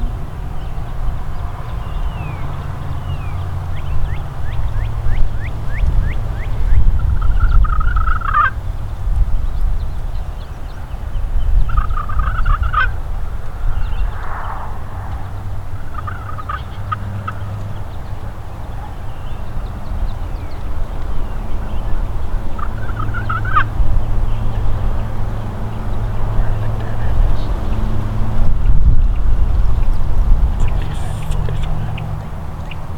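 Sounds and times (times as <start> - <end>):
steady low rumble: 0.0 - 18.9, 19.9 - 32.9
turkey gobbling: 7.2 - 8.6, 11.7 - 13.0, 15.8 - 17.5, 22.6 - 23.7.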